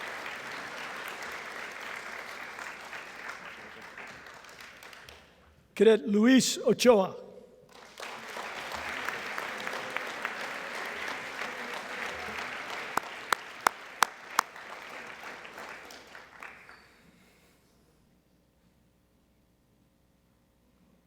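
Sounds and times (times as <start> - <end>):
audience applauding: 0.0 - 5.4, 7.7 - 17.0.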